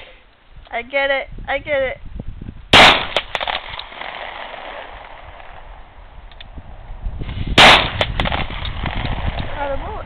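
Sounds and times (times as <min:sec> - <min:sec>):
outdoor background noise: 0:00.0 - 0:10.0
echoing gunshot cracks: 0:02.7 - 0:05.6, 0:07.5 - 0:09.5.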